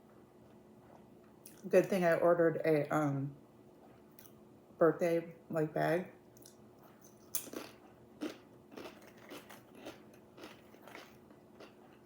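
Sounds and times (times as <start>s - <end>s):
crunchy chewing: 6.4s - 12.0s
biting into crisp chips: 7.1s - 12.0s.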